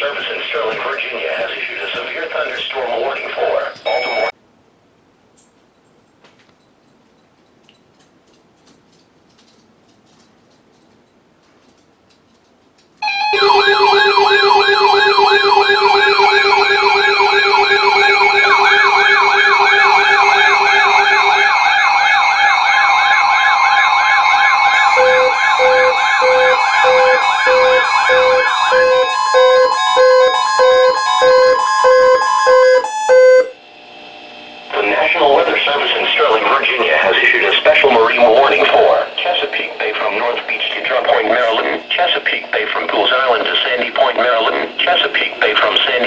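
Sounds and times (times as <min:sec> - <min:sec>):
steady beeping: 0:00.0 - 0:04.4, 0:13.0 - 0:46.0
siren-like electronic warbles: 0:13.0 - 0:41.6
steady electronic tones: 0:13.0 - 0:46.0.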